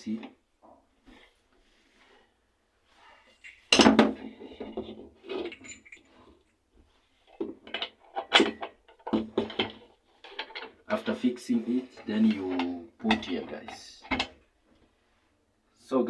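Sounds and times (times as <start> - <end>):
parts clicking and clattering: 3.3 - 6.5, 7.3 - 14.5
sharp knocks and scrapes: 7.3 - 14.5.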